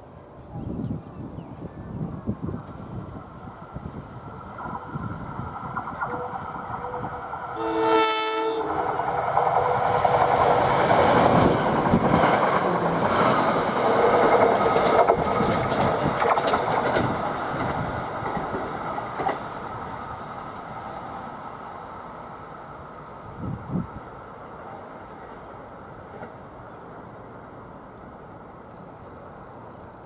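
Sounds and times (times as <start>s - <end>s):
train wheels rushing on rail: 1.9s - 30.0s
train horn blast: 6.1s - 9.0s
sharp clicks of wheels: 14.2s - 18.6s.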